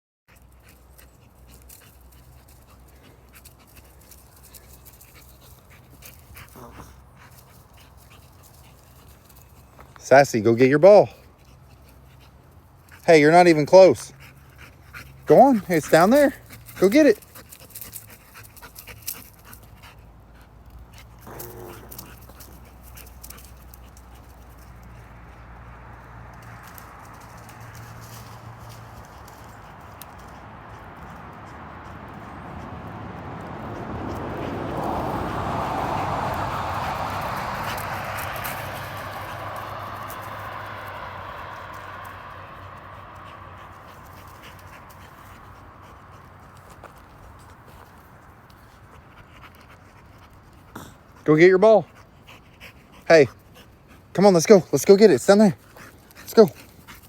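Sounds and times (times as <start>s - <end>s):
dog panting: 0.3s - 10.0s, 10.6s - 57.0s
dog crying: 21.3s - 22.2s.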